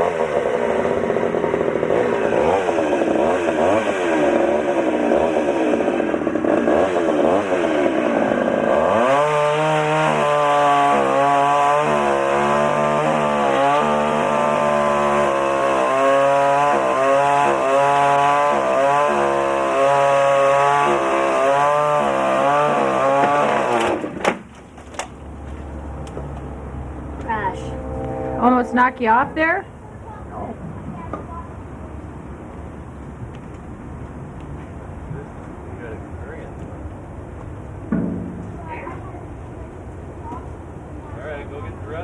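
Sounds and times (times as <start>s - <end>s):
chainsaw cutting wood: 0.0s - 24.5s.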